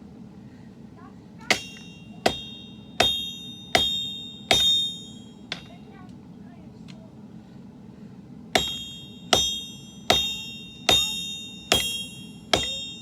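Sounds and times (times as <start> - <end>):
hammer striking metal on anvil: 1.4 - 5.9, 8.6 - 13.0.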